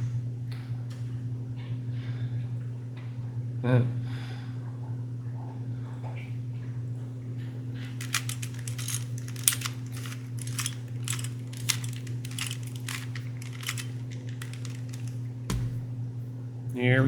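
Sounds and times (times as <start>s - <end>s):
steady low hum: 7.6s - 17.0s
puzzle cube clicking and scraping: 8.0s - 15.8s
thump: 15.5s - 15.9s.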